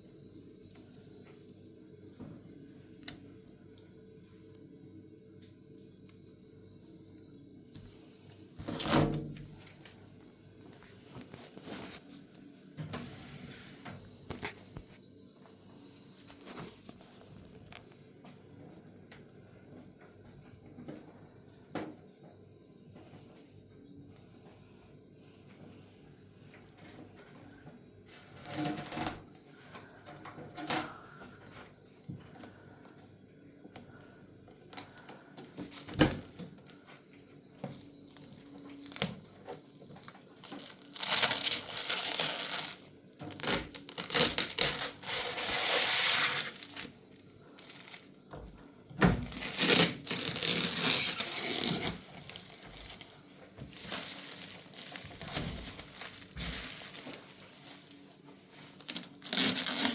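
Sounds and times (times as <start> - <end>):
plastic packaging tearing: 28.3 - 29.2, 38.1 - 47.0, 47.6 - 48.2, 49.2 - 58.0, 58.8 - 59.9.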